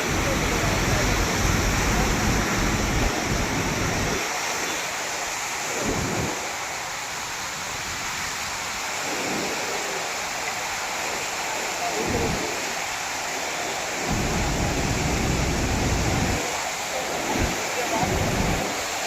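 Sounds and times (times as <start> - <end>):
water rushing: 0.0 - 19.0
wind buffeting microphone: 14.1 - 16.4.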